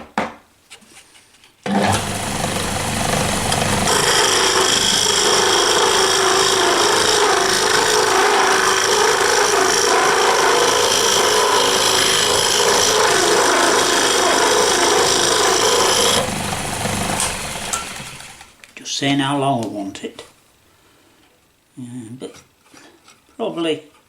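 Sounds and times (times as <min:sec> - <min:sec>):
lathe motor hum: 0:01.7 - 0:18.5
lathe tool scraping wood: 0:01.7 - 0:18.5.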